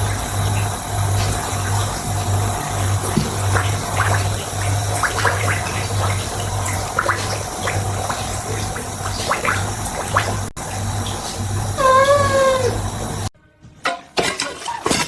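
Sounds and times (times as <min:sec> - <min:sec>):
water gushing and gurgling: 0:00.0 - 0:13.3.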